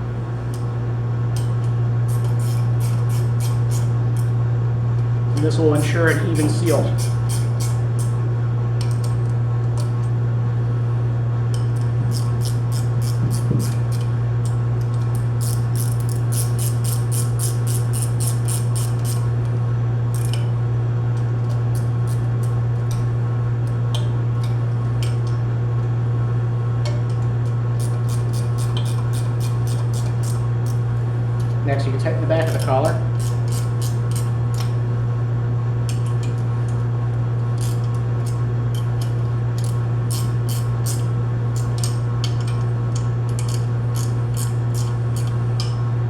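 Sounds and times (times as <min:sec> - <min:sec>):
steady low hum: 0:00.0 - 0:46.0
socket ratchet clicking: 0:06.1 - 0:08.1, 0:15.0 - 0:19.2, 0:27.8 - 0:30.8, 0:33.2 - 0:34.7, 0:39.0 - 0:42.6.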